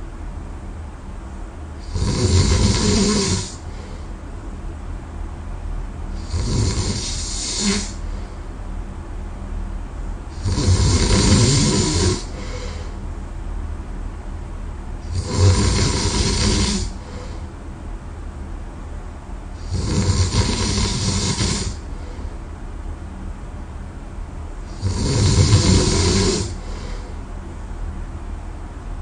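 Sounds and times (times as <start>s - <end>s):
person snoring heavily: 1.8s - 3.9s, 6.2s - 8.1s, 10.3s - 13.0s, 15.0s - 17.4s, 19.6s - 22.1s, 24.7s - 27.1s
quiet breathing: 2.8s - 4.4s, 10.6s - 13.1s, 15.1s - 17.6s, 20.7s - 22.5s, 25.4s - 27.4s.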